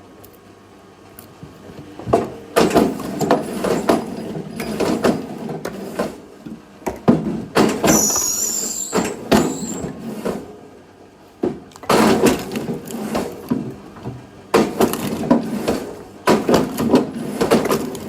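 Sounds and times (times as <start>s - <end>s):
brief high squeak: 7.9s - 9.9s.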